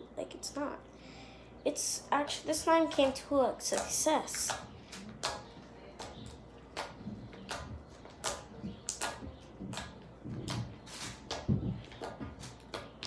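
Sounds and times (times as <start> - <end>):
slime squishing with wet pops: 2.9 - 13.0.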